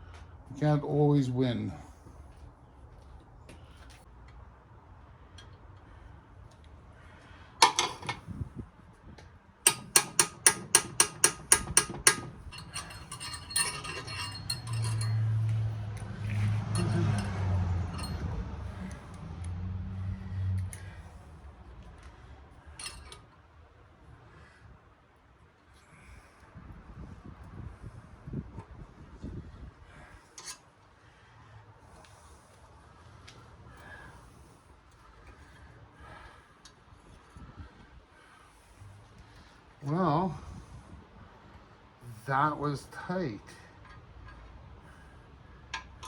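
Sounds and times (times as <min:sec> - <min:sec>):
metal tools clinking: 0:07.6 - 0:08.2, 0:09.7 - 0:19.0, 0:22.8 - 0:23.2
scraping handling noise: 0:07.6 - 0:08.5, 0:09.7 - 0:18.3, 0:22.8 - 0:23.3
sharp metallic taps: 0:09.7 - 0:15.2.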